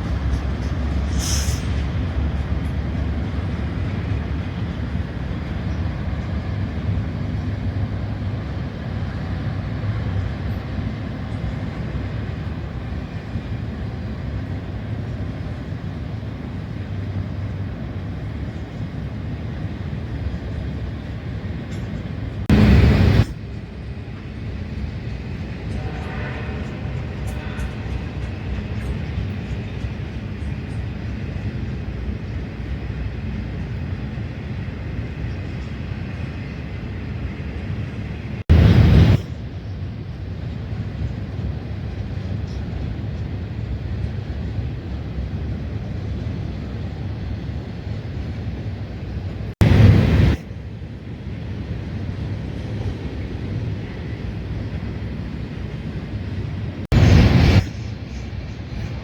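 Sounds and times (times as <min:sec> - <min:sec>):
diesel locomotives rumbling: 0:00.0 - 0:59.0
loud bursts of rushing noise: 0:22.5 - 0:23.4, 0:38.5 - 0:39.3, 0:49.6 - 0:50.4, 0:56.9 - 0:58.2.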